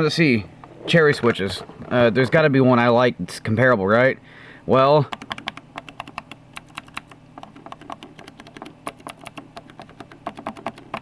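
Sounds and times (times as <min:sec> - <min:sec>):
mechanical keyboard key clicks: 0:05.1 - 0:11.0.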